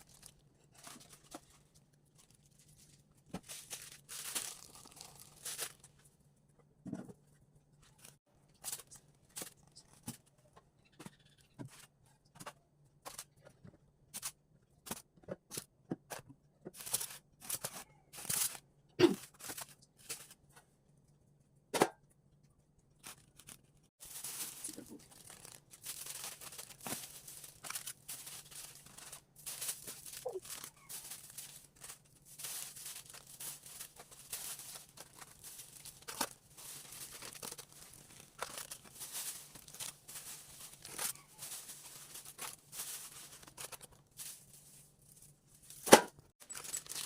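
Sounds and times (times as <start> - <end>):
food packaging rustling and tearing: 0.0 - 6.0, 16.7 - 18.6, 19.2 - 20.4, 23.0 - 47.0.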